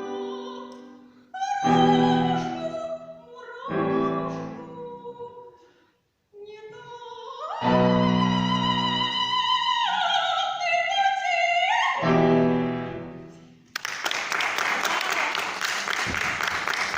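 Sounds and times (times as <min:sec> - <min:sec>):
woman singing classically: 0:00.0 - 0:05.6, 0:06.3 - 0:12.1
piano chords: 0:01.6 - 0:05.1, 0:12.0 - 0:13.6
applause: 0:13.7 - 0:16.9.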